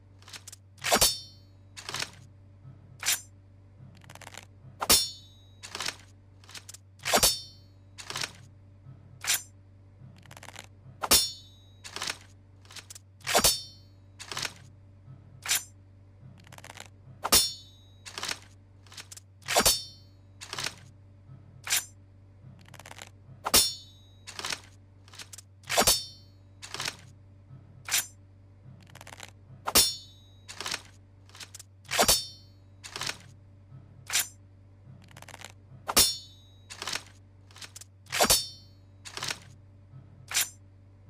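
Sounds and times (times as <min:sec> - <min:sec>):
sword metallic clanks and clicks: 0:00.2 - 0:02.2, 0:03.0 - 0:03.3, 0:04.2 - 0:08.4, 0:09.2 - 0:09.5, 0:10.4 - 0:14.7, 0:15.4 - 0:15.7, 0:16.7 - 0:20.9, 0:21.7 - 0:21.9, 0:22.9 - 0:27.1, 0:27.9 - 0:28.2, 0:29.1 - 0:33.3, 0:34.1 - 0:34.4, 0:35.3 - 0:39.5, 0:40.3 - 0:40.6.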